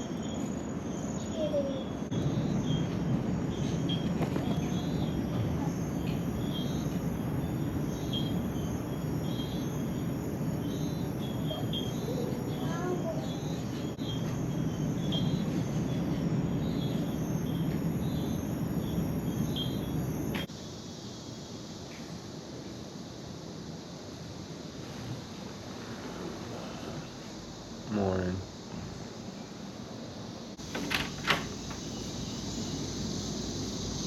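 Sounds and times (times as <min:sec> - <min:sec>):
crickets chirping: 0:00.0 - 0:34.0.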